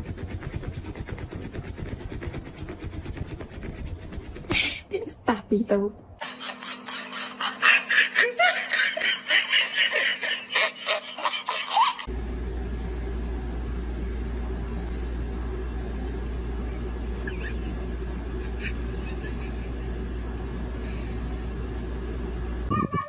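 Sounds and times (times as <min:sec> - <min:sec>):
steady low hum: 0:00.0 - 0:23.0
pulsing laughter: 0:06.2 - 0:12.1, 0:17.2 - 0:20.2.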